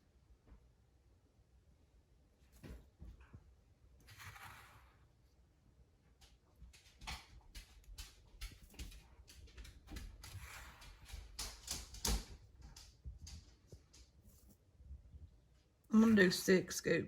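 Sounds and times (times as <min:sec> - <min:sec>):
scoop scraping coffee grounds: 0:04.1 - 0:05.0.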